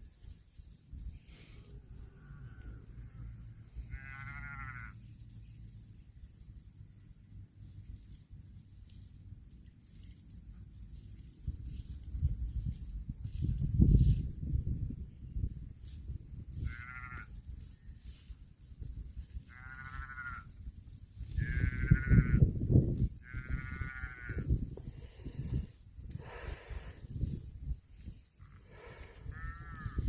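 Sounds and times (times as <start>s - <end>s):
young animal bleating: 2.0s - 5.0s, 16.6s - 17.4s, 19.4s - 20.6s, 21.3s - 22.4s, 23.2s - 24.5s, 29.3s - 30.0s.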